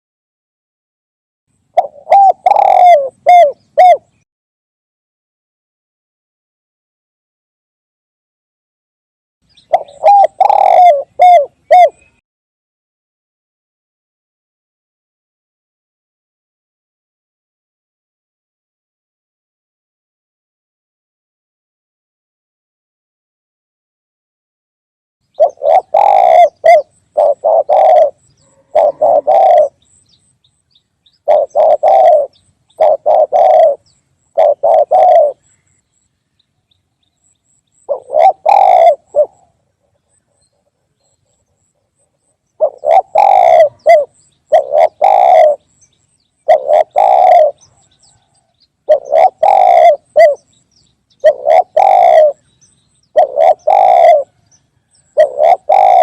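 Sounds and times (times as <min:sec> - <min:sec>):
dove cooing: 0:01.7 - 0:04.2, 0:09.6 - 0:12.2, 0:25.3 - 0:30.0, 0:31.2 - 0:35.6, 0:37.8 - 0:41.7, 0:42.6 - 0:45.8, 0:46.4 - 0:50.5, 0:51.2 - 0:52.5, 0:53.1 - 0:56.0.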